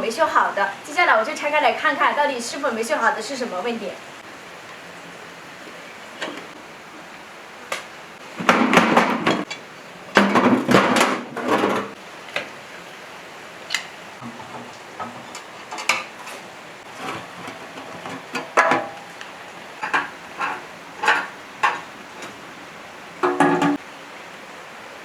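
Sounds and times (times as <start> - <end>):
metal tools clanking and scraping: 19.8 - 22.4.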